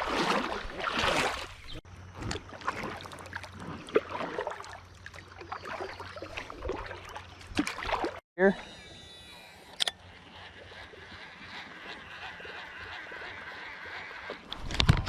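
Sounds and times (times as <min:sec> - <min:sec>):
water splashing around a kayak: 0:00.0 - 0:08.2.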